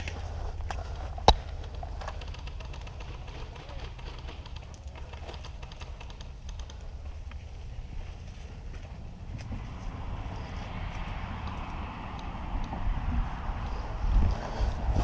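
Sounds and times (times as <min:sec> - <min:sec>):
low outdoor rumble: 0:00.0 - 0:15.0
faint clicks: 0:00.1 - 0:07.6.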